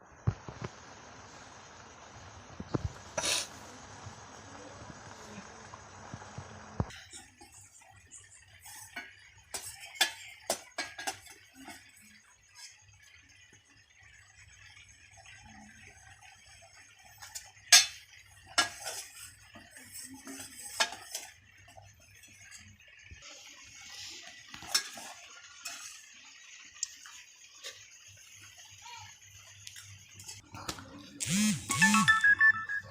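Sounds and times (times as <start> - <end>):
kitchen utensils clinking: 8.5 - 12.0, 17.1 - 22.6, 24.6 - 26.2.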